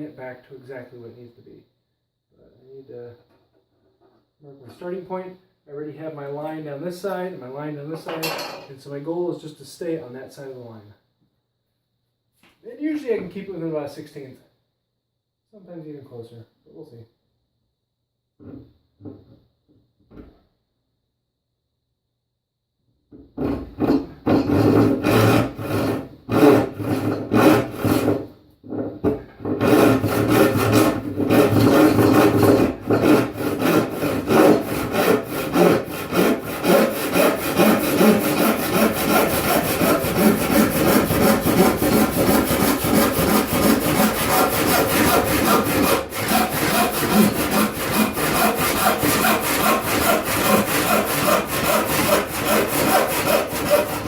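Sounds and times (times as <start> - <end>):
hand saw rasping through wood: 23.5 - 28.3, 29.6 - 54.0.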